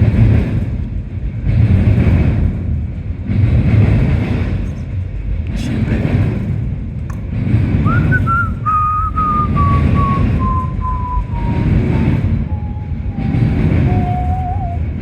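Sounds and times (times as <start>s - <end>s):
freight train rumbling past: 0.0s - 15.0s
high squeal: 7.9s - 15.0s.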